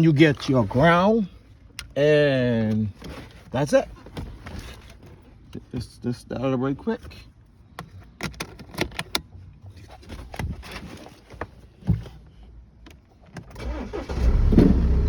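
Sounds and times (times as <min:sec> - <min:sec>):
car engine cranking and running: 0:12.9 - 0:15.0.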